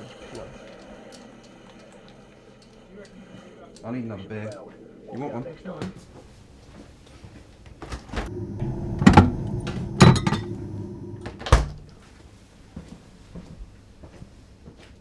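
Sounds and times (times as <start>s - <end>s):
fridge low hum: 8.1s - 12.0s
fridge door opening: 8.2s - 11.9s
fridge door thumping shut: 11.4s - 11.8s.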